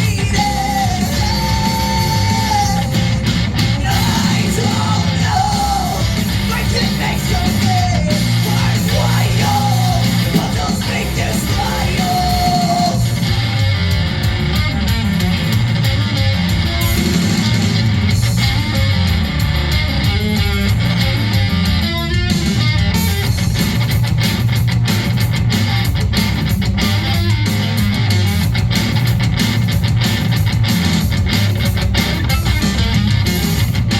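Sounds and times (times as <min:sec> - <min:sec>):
steady drum hits: 0:00.0 - 0:19.6
bass guitar: 0:00.0 - 0:33.9
strummed electric guitar: 0:00.0 - 0:33.9.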